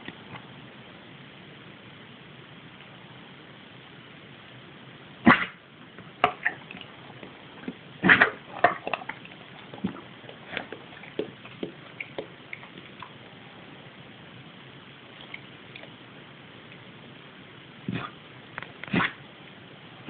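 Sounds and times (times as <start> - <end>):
dog coughing: 5.3 - 5.5, 8.0 - 9.2, 17.9 - 18.2, 18.9 - 19.2.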